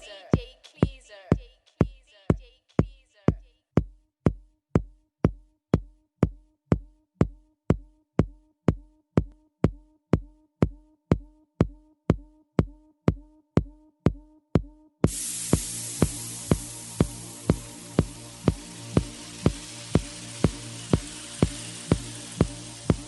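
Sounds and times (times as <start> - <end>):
drum machine kick drum: 0.0 - 23.0
soft synth note: 15.1 - 23.0.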